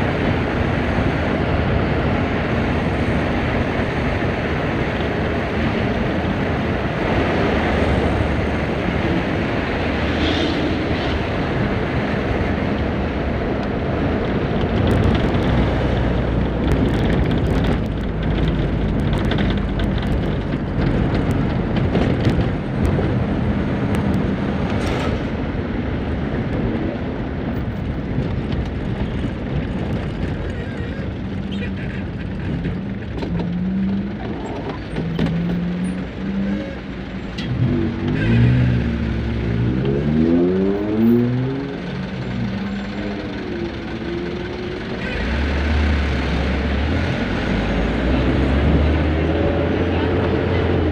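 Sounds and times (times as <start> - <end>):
wind noise on microphone: 0.0 - 50.9
vehicle engine revving: 31.1 - 50.9.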